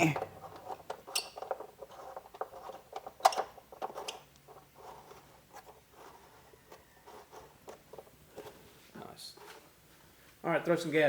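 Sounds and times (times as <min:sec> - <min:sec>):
parts clicking and tapping: 0:00.0 - 0:05.8.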